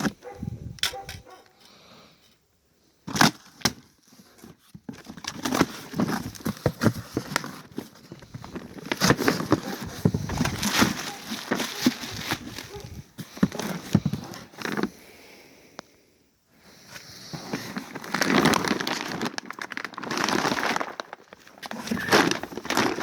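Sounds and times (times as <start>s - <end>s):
packaging crackling and rustling: 3.0s - 14.9s, 16.9s - 23.0s.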